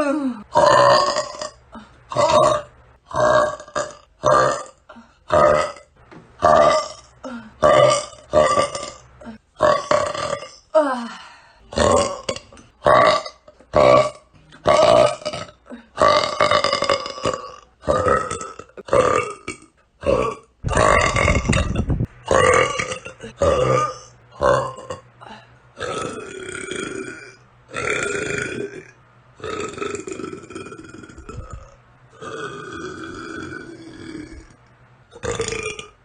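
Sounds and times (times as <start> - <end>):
girl burping: 6.5 - 11.0, 11.7 - 25.0.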